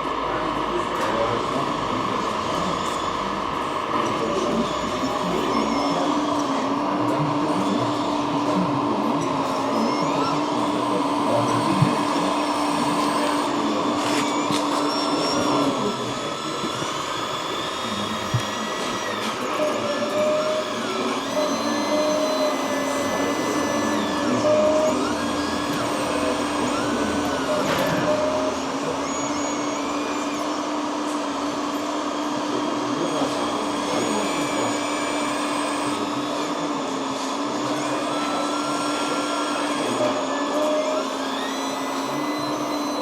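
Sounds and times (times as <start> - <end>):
electric hydraulic pump whining: 0.0 - 43.0.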